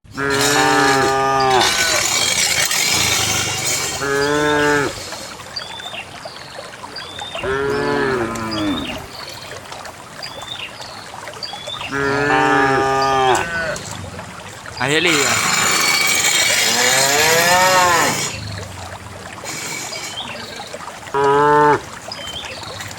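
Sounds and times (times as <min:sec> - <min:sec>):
cows mooing: 0:00.1 - 0:05.1, 0:07.4 - 0:09.1, 0:11.9 - 0:13.9, 0:15.0 - 0:18.4, 0:21.1 - 0:21.9.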